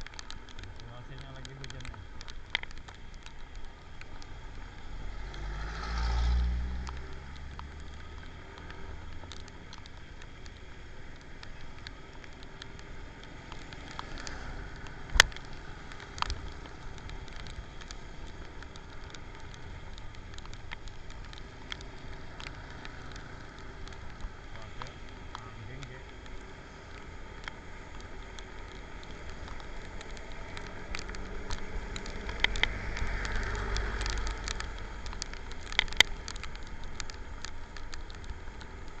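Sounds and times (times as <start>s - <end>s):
steady rain hiss: 0.0s - 39.0s
vehicle passing by: 4.8s - 8.0s.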